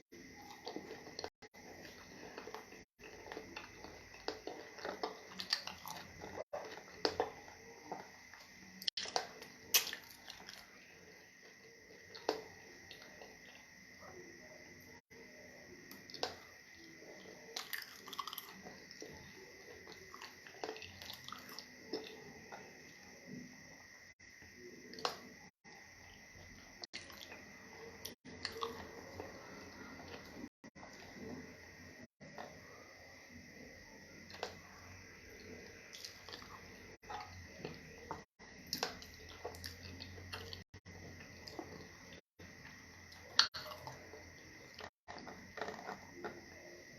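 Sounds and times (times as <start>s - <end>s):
wet chewing: 0.0s - 10.8s, 15.9s - 22.8s, 43.1s - 46.7s
wet eating clicks and smacks: 2.3s - 10.7s.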